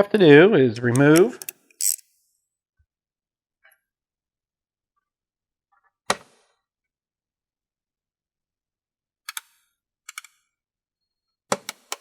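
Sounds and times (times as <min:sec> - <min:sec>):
ratchet clicking: 0:00.9 - 0:02.0.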